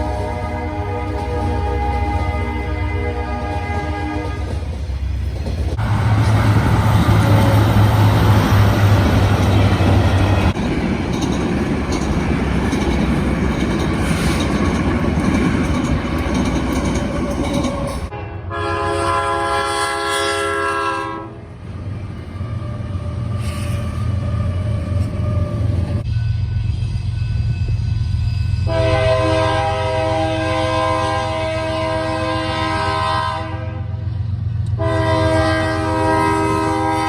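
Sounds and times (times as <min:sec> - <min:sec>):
locomotive air horn blast: 0:00.0 - 0:04.7, 0:18.0 - 0:21.5, 0:28.6 - 0:34.0, 0:34.8 - 0:37.0
freight train passing: 0:00.0 - 0:37.0.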